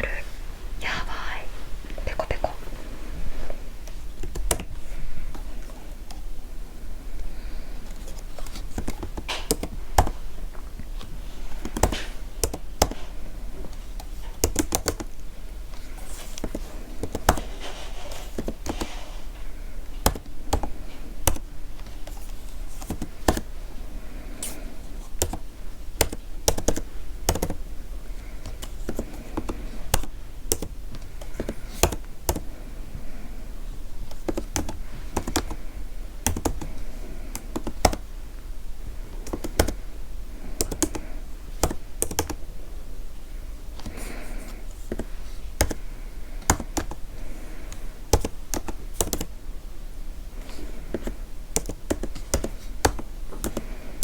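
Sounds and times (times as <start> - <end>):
computer keyboard typing: 4.2 - 6.3, 7.8 - 15.2, 15.8 - 23.6, 24.4 - 32.6, 34.0 - 38.1, 39.2 - 39.8, 40.4 - 42.4, 43.8 - 49.4, 50.4 - 54.0.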